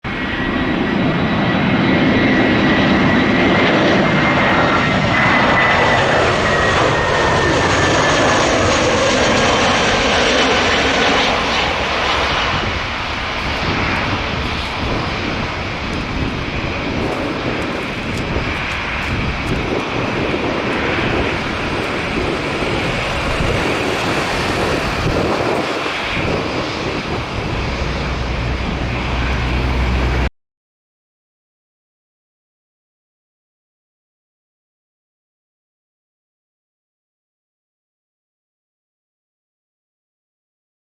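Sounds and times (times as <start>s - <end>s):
jet engine whine: 0.0s - 30.3s
jet rumble: 0.0s - 30.3s.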